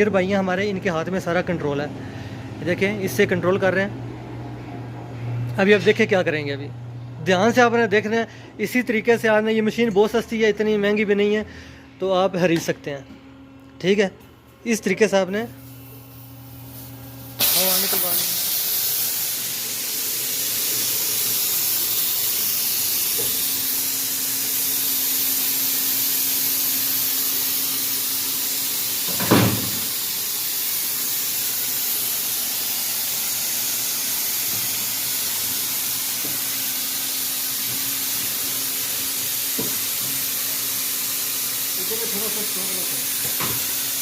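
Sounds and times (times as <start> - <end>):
air hissing out of a tyre: 15.6 - 44.0.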